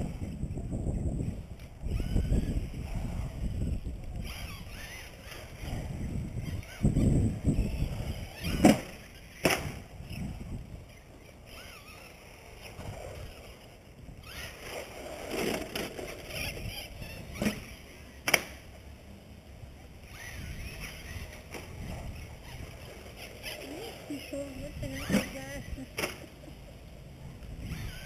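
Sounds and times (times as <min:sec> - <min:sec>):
faint wavering motor whine: 0:00.0 - 0:28.0
rc truck rumbling and rattling: 0:00.0 - 0:28.0
sharp knocks of landings: 0:08.4 - 0:09.9.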